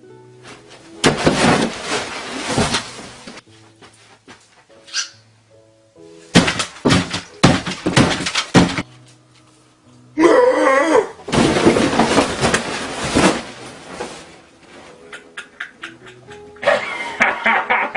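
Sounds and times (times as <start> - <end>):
faint background music: 0.0 - 17.9
crashes and clattering: 1.0 - 3.4, 6.4 - 8.8, 11.3 - 14.4.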